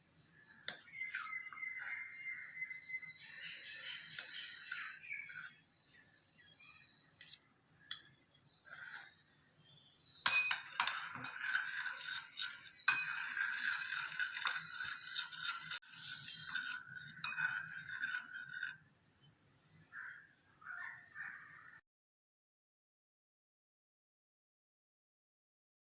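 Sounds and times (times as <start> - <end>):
utensils clinking against glass: 10.3 - 18.8.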